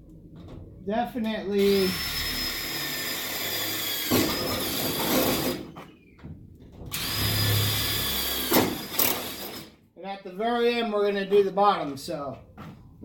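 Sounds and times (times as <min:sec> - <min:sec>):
rivet gun motor whining: 0:06.9 - 0:09.7.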